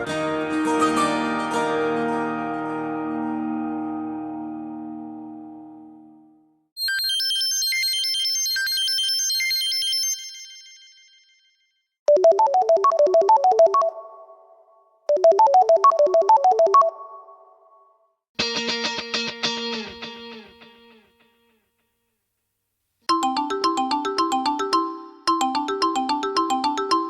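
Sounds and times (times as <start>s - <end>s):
phone ringtones: 6.8s - 10.6s, 12.1s - 14.1s
high fast chiming melody: 23.1s - 27.0s.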